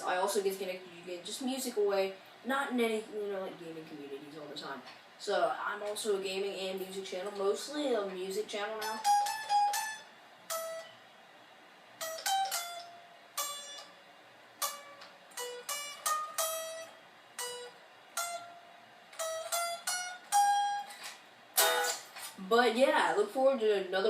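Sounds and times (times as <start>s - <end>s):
electric guitar single notes: 8.8s - 11.1s, 12.0s - 22.4s.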